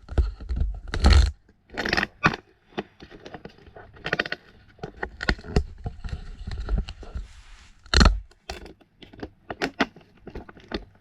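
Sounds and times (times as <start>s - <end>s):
strap rustling and scraping: 2.7s - 8.7s.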